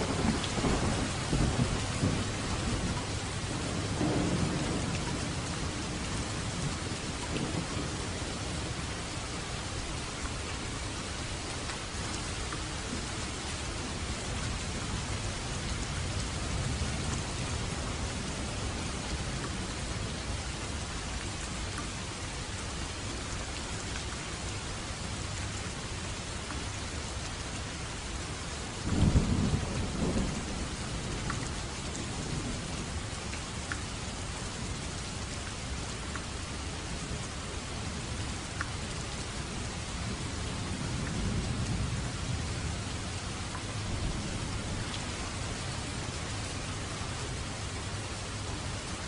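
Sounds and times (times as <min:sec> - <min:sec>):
thunder rumbling: 0:00.0 - 0:09.3
steady rain falling: 0:00.0 - 0:49.0.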